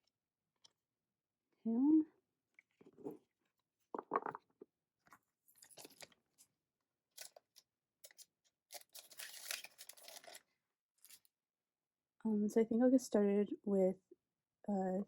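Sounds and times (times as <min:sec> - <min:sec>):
crinkling: 0:05.5 - 0:06.2, 0:07.2 - 0:10.4
paper and plastic rustling: 0:05.5 - 0:06.2, 0:07.2 - 0:10.4.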